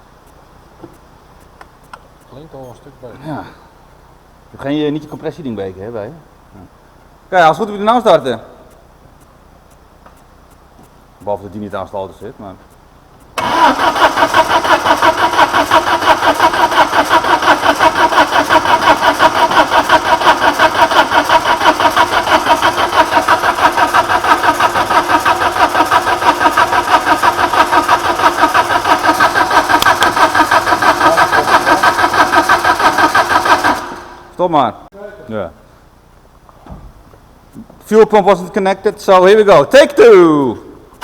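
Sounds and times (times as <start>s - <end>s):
engine cranking without firing: 13.3s - 34.4s.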